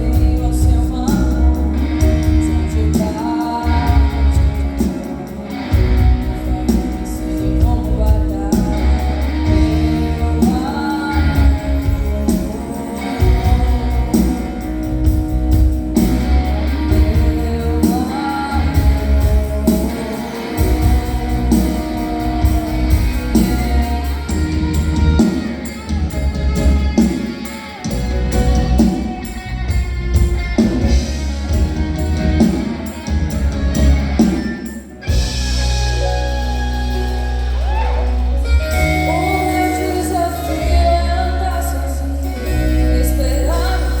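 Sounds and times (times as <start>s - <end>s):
woman singing: 0.0s - 25.4s, 37.5s - 44.0s
drum kit and percussion: 0.0s - 44.0s
guitar: 0.0s - 44.0s.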